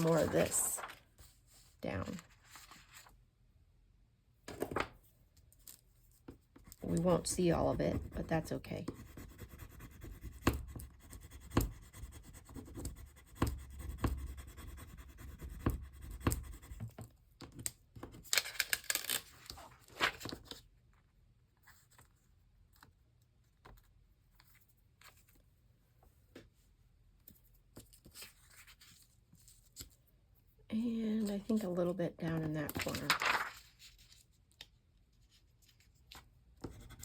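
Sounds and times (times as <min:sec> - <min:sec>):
paper rustling and scraping: 0:00.0 - 0:03.2, 0:18.3 - 0:20.6, 0:32.7 - 0:34.4.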